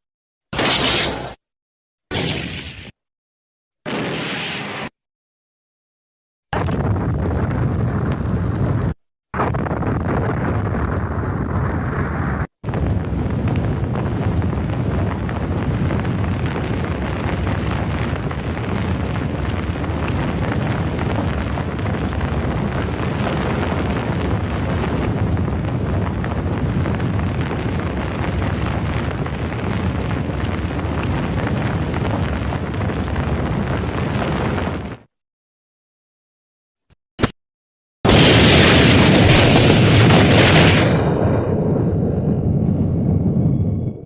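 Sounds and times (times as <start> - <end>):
explosion rumble: 6.5 - 35.1, 38.1 - 44.0.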